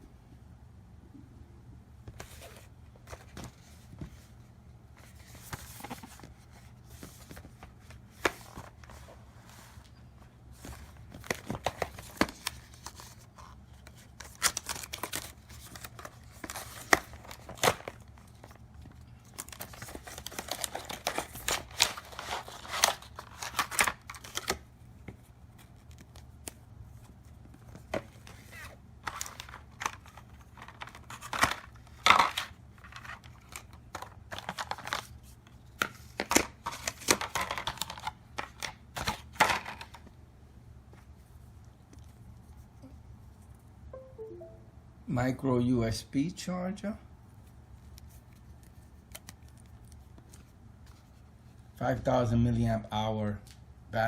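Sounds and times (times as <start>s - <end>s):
plastic and cardboard crinkling: 5.0s - 40.1s.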